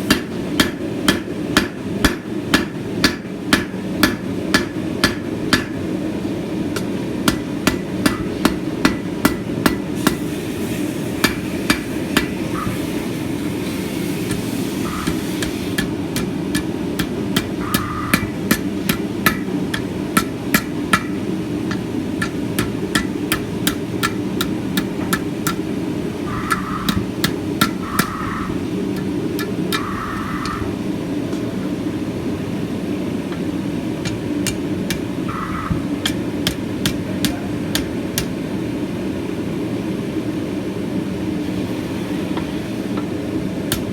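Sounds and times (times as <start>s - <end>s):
hammer striking steel on anvil: 0.1s - 5.9s, 6.7s - 10.3s, 11.2s - 12.8s, 14.3s - 30.7s, 34.0s - 38.4s.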